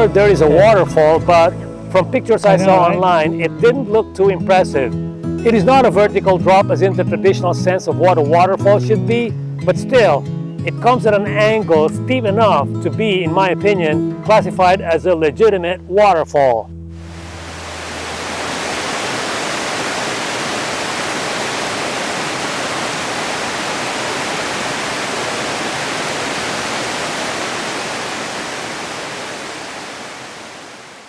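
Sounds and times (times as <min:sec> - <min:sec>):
waterfall rushing: 0:17.0 - 0:31.0.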